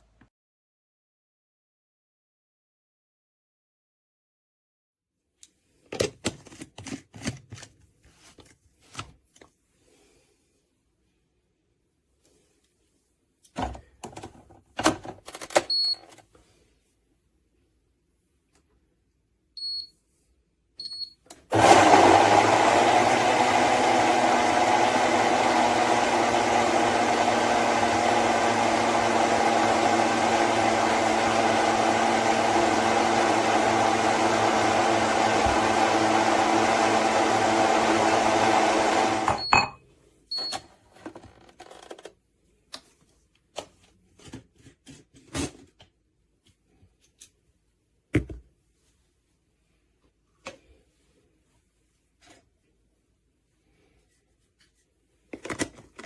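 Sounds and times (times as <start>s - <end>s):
electric blender running: 21.5s - 39.5s.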